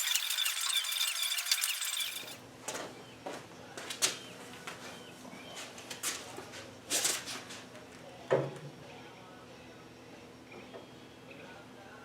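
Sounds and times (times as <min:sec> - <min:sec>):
power tool whine: 0:00.0 - 0:02.4.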